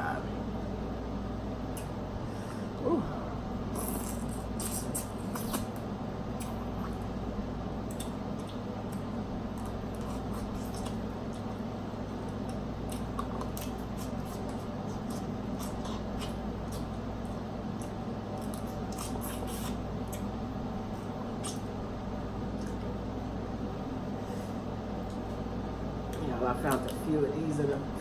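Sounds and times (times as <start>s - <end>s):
steady low hum: 0.0s - 28.0s
chewing and mouth noises: 3.7s - 7.2s, 7.8s - 23.0s.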